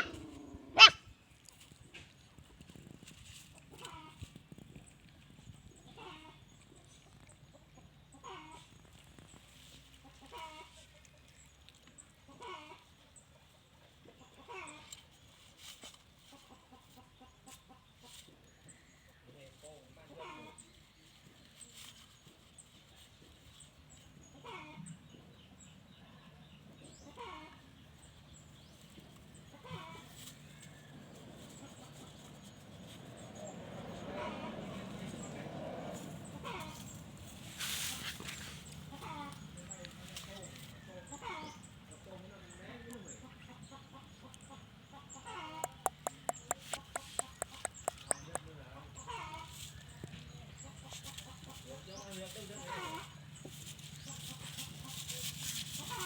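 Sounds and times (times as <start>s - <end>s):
dog whimpering: 0.0s - 1.0s
faint short animal calls: 0.0s - 1.0s.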